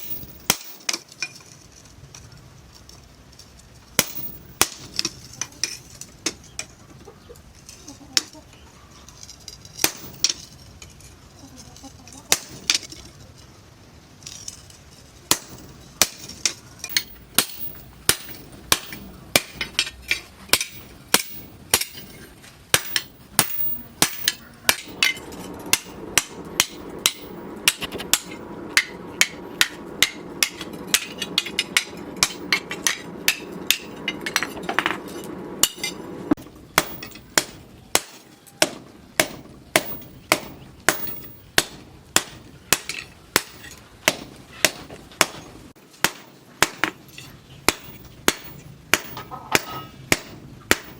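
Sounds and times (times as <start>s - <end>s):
hammer striking steel on anvil: 0.0s - 1.0s, 4.0s - 5.1s, 9.8s - 10.5s, 15.3s - 50.9s.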